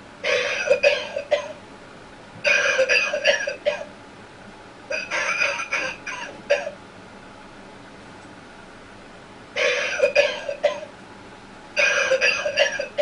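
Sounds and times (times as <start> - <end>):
recorded coughing: 0.4 - 1.6, 2.4 - 3.9, 4.9 - 6.8, 9.6 - 10.9, 11.8 - 13.0.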